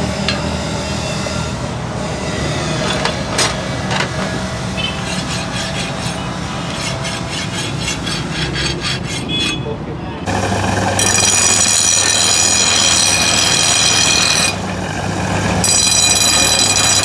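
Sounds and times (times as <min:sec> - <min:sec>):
regular metal rasping: 0:04.9 - 0:09.6, 0:10.3 - 0:17.0
motor humming: 0:10.3 - 0:17.0.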